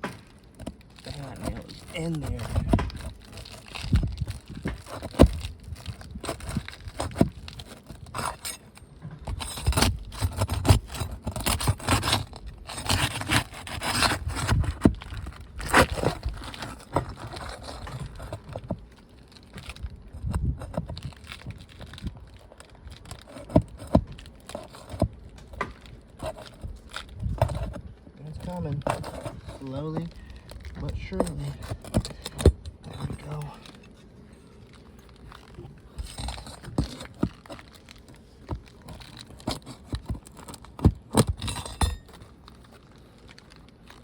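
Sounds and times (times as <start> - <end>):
pry bar scraping on nail: 6.2 - 15.0, 35.9 - 37.6, 38.8 - 42.2.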